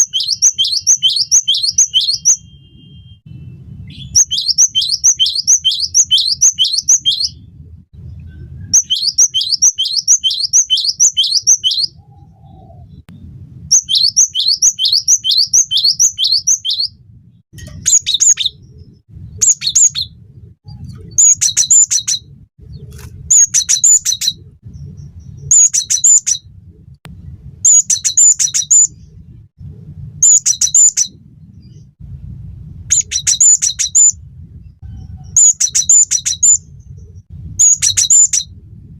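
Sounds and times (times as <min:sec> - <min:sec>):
great tit singing: 0:00.0 - 0:02.5, 0:04.0 - 0:07.3, 0:08.8 - 0:11.9, 0:13.7 - 0:16.9.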